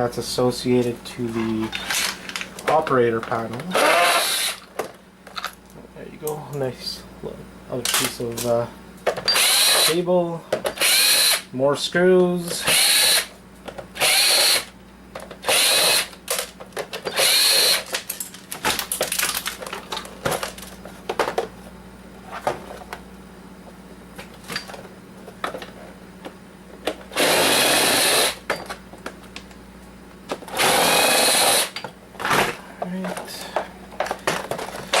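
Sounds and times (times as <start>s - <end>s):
power drill running: 3.7s - 4.7s, 9.3s - 10.0s, 10.8s - 11.5s, 12.6s - 13.3s, 14.0s - 14.7s, 15.4s - 16.2s, 17.1s - 17.9s, 27.1s - 28.4s, 30.5s - 31.8s.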